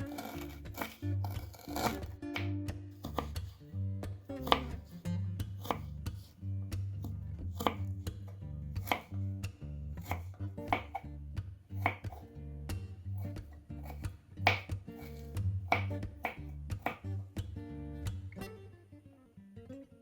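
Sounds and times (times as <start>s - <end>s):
knife cutting on cutting board: 0.0s - 3.6s, 4.4s - 6.4s, 7.0s - 9.2s, 10.0s - 11.0s, 11.8s - 12.2s, 13.2s - 17.0s
background music: 0.0s - 19.0s.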